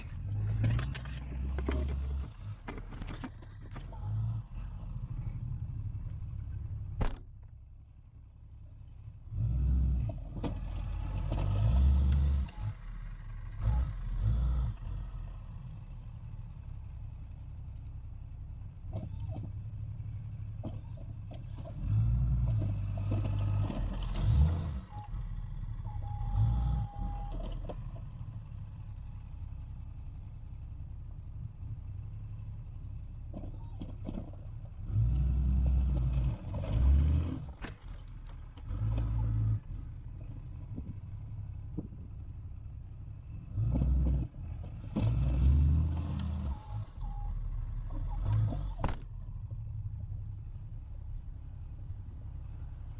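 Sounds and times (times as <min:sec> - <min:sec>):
pickup truck engine running: 0:00.0 - 0:09.4.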